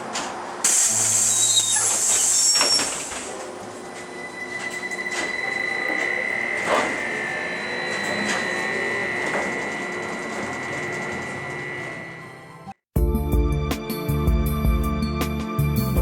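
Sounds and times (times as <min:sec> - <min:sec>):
rumble of bus ride: 0:00.0 - 0:12.2
electric drive whine: 0:03.5 - 0:12.6.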